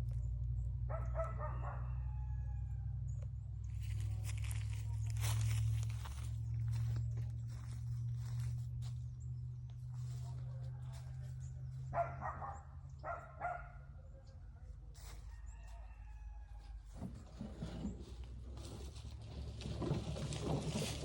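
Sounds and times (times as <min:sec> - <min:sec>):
steady low hum: 0:00.0 - 0:15.3
chicken crowing: 0:00.9 - 0:03.0, 0:15.0 - 0:17.0
rustling: 0:17.1 - 0:21.0.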